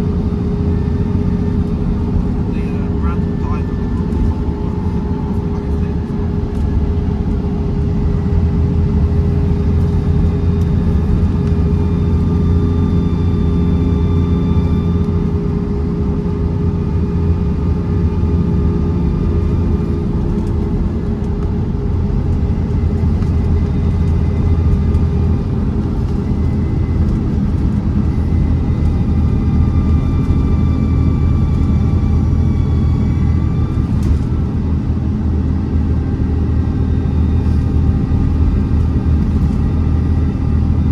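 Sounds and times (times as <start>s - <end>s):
bus diesel engine running: 0.0s - 40.9s
faint high turbo whistle: 22.8s - 34.9s.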